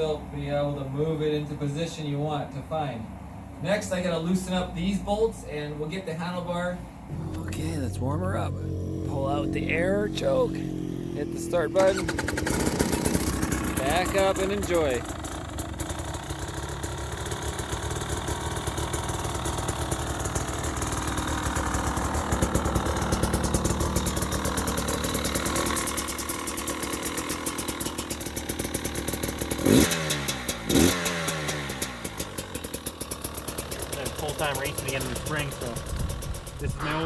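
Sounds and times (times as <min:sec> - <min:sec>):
engine throttle blips: 0:07.0 - 0:17.9, 0:27.8 - 0:37.0
two-stroke engine idling fast: 0:08.8 - 0:37.0.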